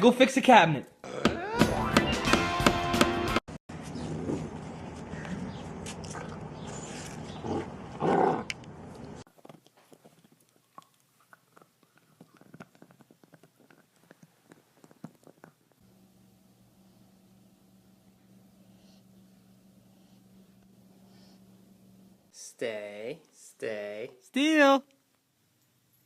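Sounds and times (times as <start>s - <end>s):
low steady hum: 15.8s - 24.2s.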